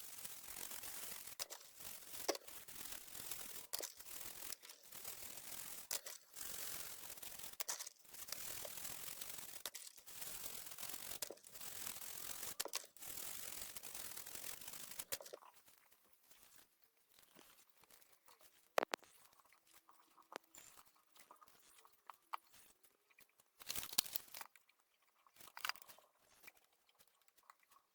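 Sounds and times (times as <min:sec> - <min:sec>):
scratchy scraping strokes: 0:00.0 - 0:15.4.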